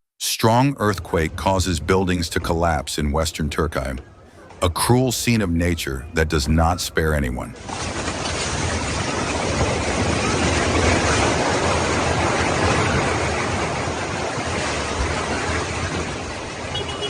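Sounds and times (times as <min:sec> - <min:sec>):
rumble of falling debris: 0:07.6 - 0:16.7.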